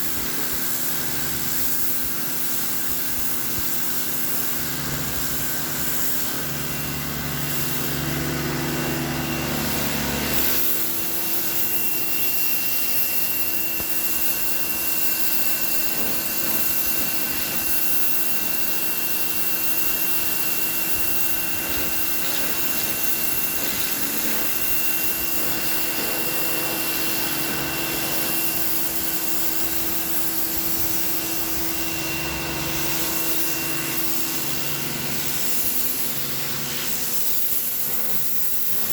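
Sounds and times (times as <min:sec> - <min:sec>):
water spray hiss: 0:00.0 - 0:08.2, 0:09.6 - 0:38.9
pressure washer motor whine: 0:00.0 - 0:38.9.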